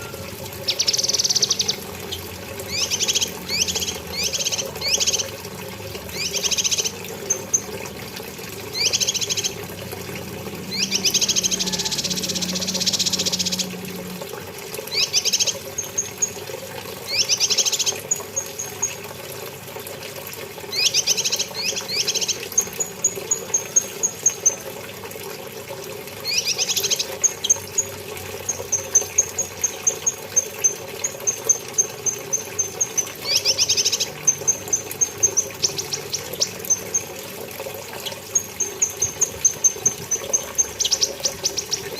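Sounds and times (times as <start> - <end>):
bird trilling song: 0.0 - 5.4, 6.1 - 7.8, 8.7 - 9.6, 10.7 - 13.7, 14.9 - 16.4, 20.7 - 24.6, 26.2 - 27.9, 28.5 - 37.2, 38.0 - 41.9.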